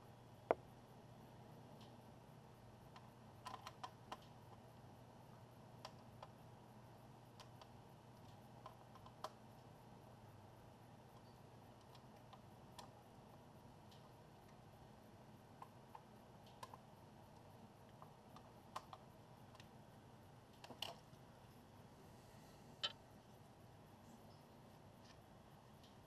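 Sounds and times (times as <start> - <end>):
low steady hum: 0.0 - 26.0
small clicks and taps: 2.9 - 4.6, 15.6 - 16.8.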